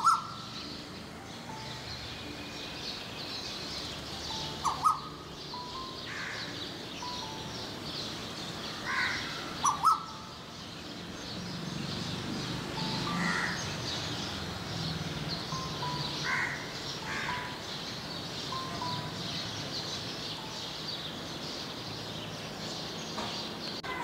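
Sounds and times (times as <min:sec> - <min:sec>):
crows cawing: 0:00.0 - 0:00.4, 0:04.6 - 0:05.1, 0:06.1 - 0:06.6, 0:08.7 - 0:10.2, 0:13.1 - 0:13.8, 0:16.2 - 0:17.6
small birds chirping: 0:00.0 - 0:24.0.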